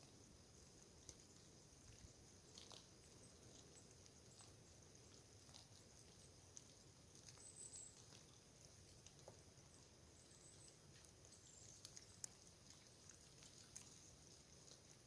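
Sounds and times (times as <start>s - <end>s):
soft ticks: 1.0s - 15.0s
faint high chirp: 7.3s - 8.2s, 9.7s - 14.2s.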